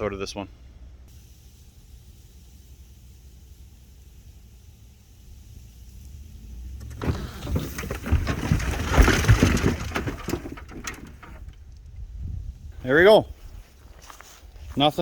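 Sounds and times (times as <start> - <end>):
car body crunching and banging: 6.8 - 11.6.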